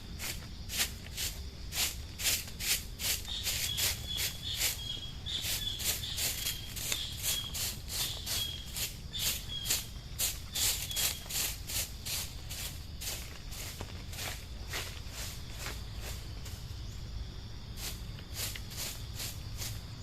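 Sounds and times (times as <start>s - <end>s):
swishing strokes on leaves: 0.1s - 16.7s, 17.8s - 20.0s
high thin chirp: 3.0s - 11.9s.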